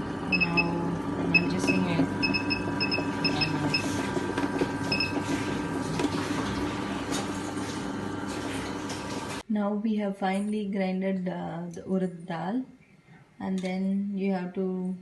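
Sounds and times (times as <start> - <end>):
wet grinder running: 0.0 - 9.4
timer beeping: 0.3 - 4.0, 4.8 - 5.2.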